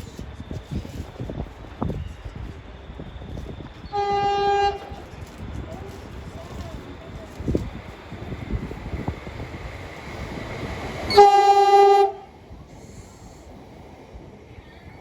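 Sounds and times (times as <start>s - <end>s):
train rumbling on tracks: 0.0s - 15.0s
train horn blast: 3.9s - 5.0s, 11.1s - 12.4s.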